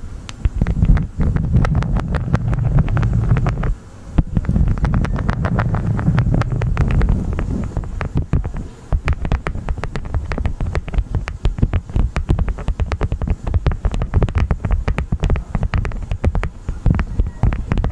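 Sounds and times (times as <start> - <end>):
low rumble: 0.0 - 12.1
wax crunching and crackling: 0.3 - 17.9.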